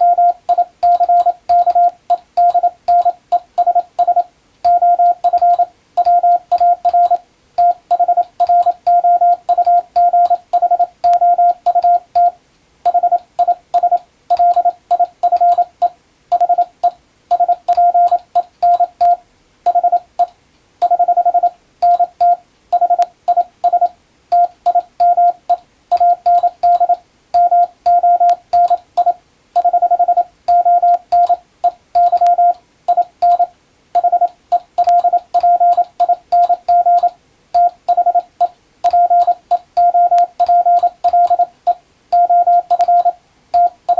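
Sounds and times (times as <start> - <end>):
morse code tone: 0.0 - 20.1, 20.8 - 43.9
keying clicks: 32.0 - 41.5, 42.2 - 43.9.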